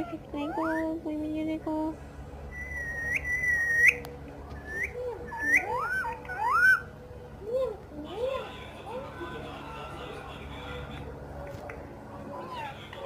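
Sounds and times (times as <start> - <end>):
parrot whistling and chirping: 2.5 - 4.0, 4.6 - 6.9.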